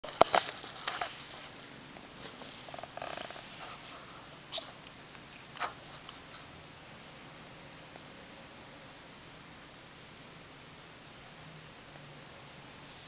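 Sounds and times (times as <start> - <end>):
kitten purring: 2.3 - 6.0
kitten hiccuping: 4.5 - 4.8.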